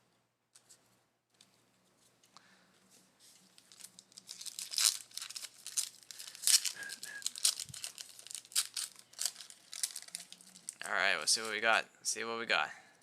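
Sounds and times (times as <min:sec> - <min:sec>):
wrapper tearing and crinkling: 0:03.5 - 0:11.6.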